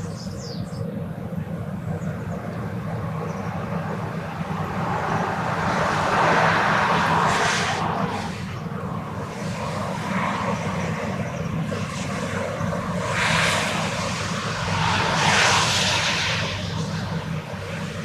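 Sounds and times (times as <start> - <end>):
low engine drone: 0.0 - 18.0
vehicles passing: 2.6 - 11.0.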